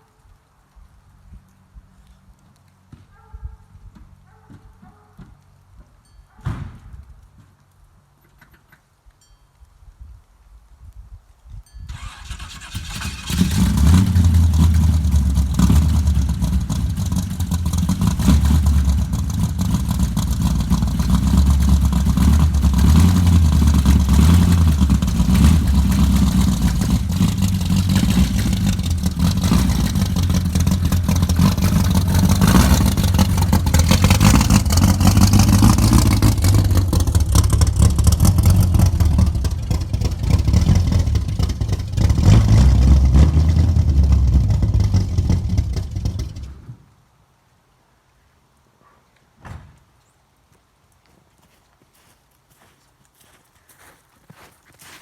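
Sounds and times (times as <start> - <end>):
car engine running: 13.3 - 46.6.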